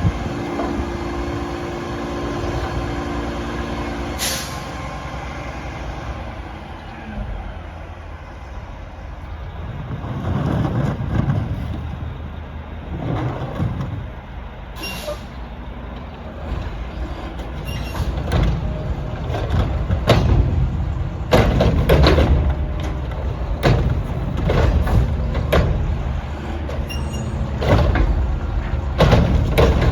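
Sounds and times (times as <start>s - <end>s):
garbage truck engine rumble: 0.0s - 29.9s.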